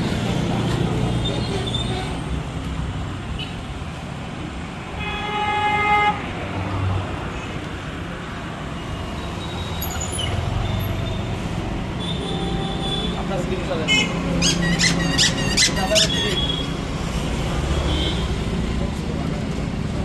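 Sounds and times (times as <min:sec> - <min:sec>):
street traffic rumbling: 0:00.0 - 0:20.0
vehicle horn honking: 0:12.0 - 0:13.2.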